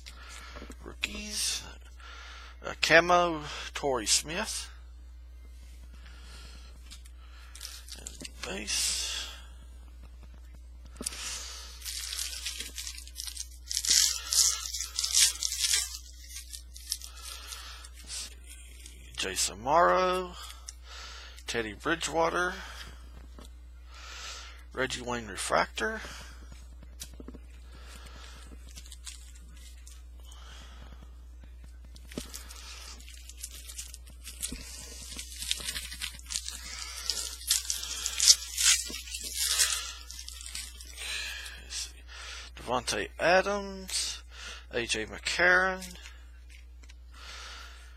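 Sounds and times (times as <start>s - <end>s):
cards rustling: 11.0s - 19.3s, 26.9s - 30.1s, 31.8s - 41.7s
foil wrapper tearing and crinkling: 11.8s - 19.2s, 32.0s - 41.7s.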